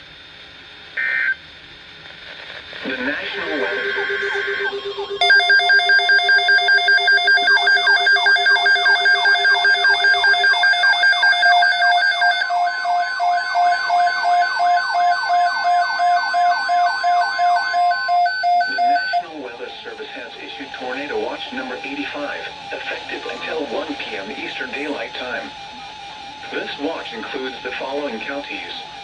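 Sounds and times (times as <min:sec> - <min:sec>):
steady alarm tone: 0:03.5 - 0:19.3
pulsing beeping alarm: 0:03.9 - 0:19.3
rising and falling siren wail: 0:05.2 - 0:19.2.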